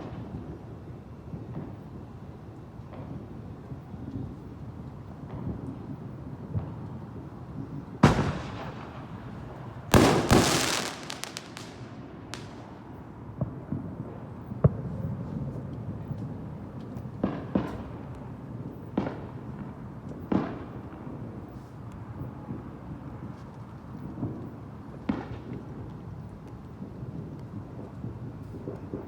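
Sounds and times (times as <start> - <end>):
rapid fireworks crackling: 6.6 - 13.1
fireworks bangs: 7.9 - 13.9.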